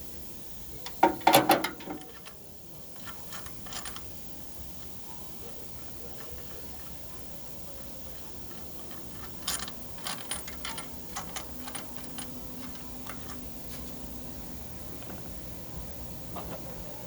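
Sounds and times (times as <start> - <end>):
small metal parts clinking: 0.9 - 2.4, 3.0 - 4.2, 8.0 - 13.9.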